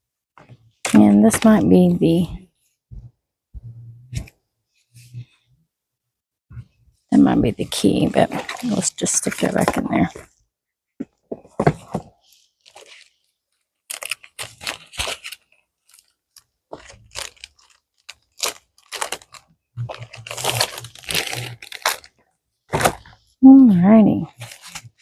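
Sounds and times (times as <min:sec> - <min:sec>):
plastic packaging crinkling: 0:12.2 - 0:23.2.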